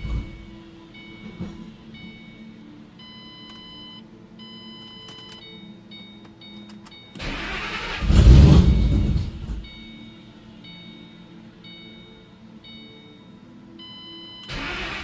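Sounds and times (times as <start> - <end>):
car engine cranking and starting: 0.0 - 2.1, 7.2 - 9.9, 14.5 - 15.0.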